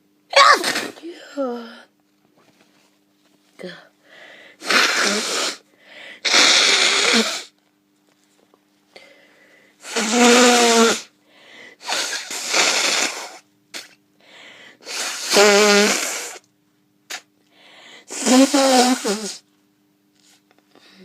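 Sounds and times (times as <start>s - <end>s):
person blowing nose: 0.4s - 1.0s, 4.6s - 5.6s, 6.2s - 7.5s, 9.8s - 11.1s, 11.8s - 14.0s, 14.8s - 16.5s, 17.1s - 17.3s, 18.1s - 19.4s.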